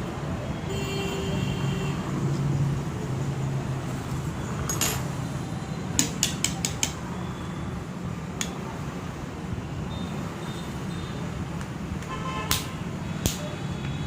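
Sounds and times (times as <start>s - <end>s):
metal objects clicking and clinking: 4.7s - 5.1s.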